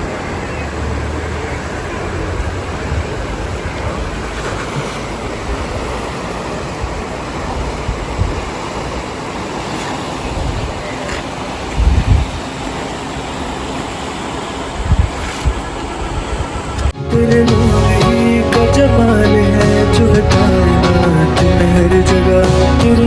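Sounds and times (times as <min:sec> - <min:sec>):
road noise from moving vehicle: 0:00.0 - 0:17.0
wind buffeting microphone: 0:00.0 - 0:17.0.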